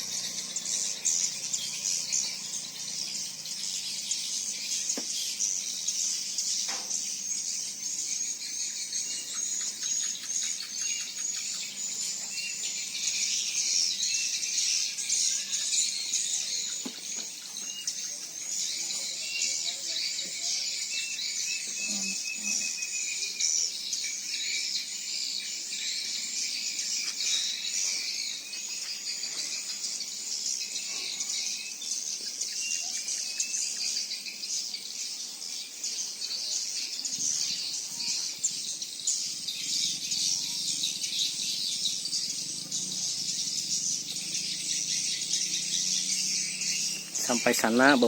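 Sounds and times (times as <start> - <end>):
small birds chirping: 0.0 - 48.0.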